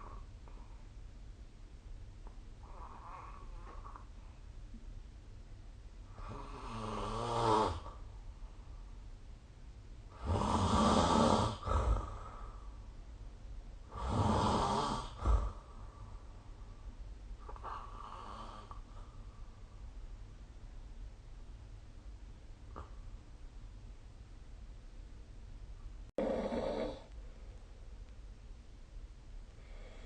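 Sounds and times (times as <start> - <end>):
person snoring: 6.1 - 8.0, 10.1 - 12.6, 13.9 - 15.7, 26.2 - 27.1.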